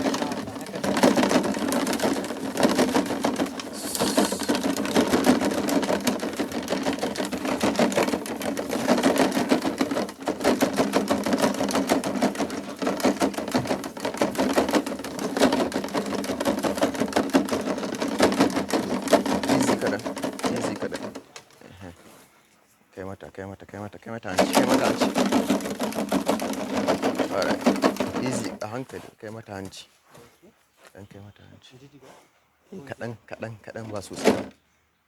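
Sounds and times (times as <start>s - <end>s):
object rattling when shaken: 0.0s - 21.6s, 24.3s - 29.0s, 33.7s - 34.6s.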